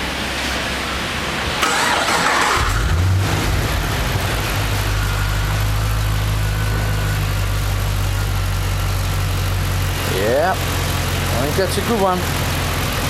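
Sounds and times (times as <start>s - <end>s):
car engine idling: 0.0s - 13.0s
starter motor cranking: 1.6s - 3.0s.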